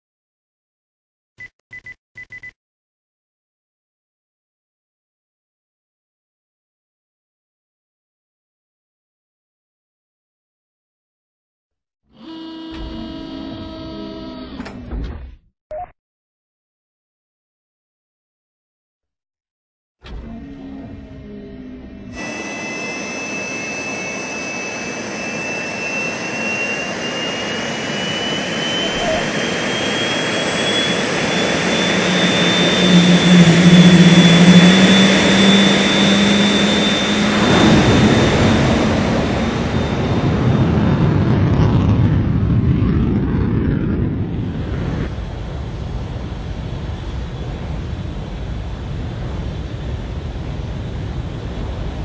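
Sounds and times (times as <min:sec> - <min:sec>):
jet engine whine: 0:12.2 - 0:14.8, 0:20.1 - 0:52.0
jet engine rush: 0:22.2 - 0:52.0.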